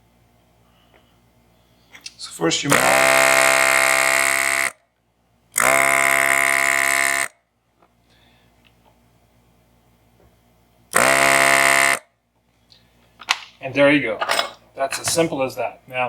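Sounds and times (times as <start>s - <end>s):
vacuum pump buzzing: 2.7s - 4.8s, 5.6s - 7.3s, 10.9s - 12.1s.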